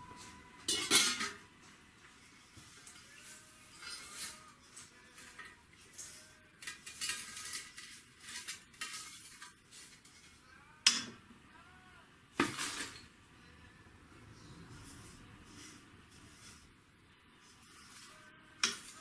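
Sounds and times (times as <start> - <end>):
metal tools scraping and clinking: 0.1 - 1.4, 2.6 - 11.1, 17.5 - 19.0.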